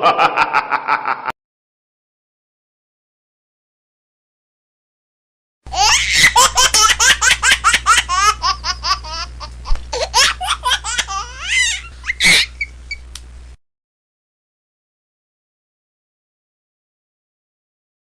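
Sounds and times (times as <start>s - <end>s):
low steady hum: 5.7s - 13.6s
high-pitched quick laughs: 10.0s - 12.7s.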